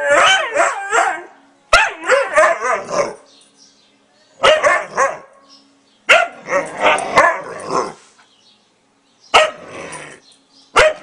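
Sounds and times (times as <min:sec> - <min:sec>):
dogs barking and howling: 0:00.0 - 0:03.3, 0:04.4 - 0:05.4, 0:06.1 - 0:08.0, 0:09.3 - 0:11.0.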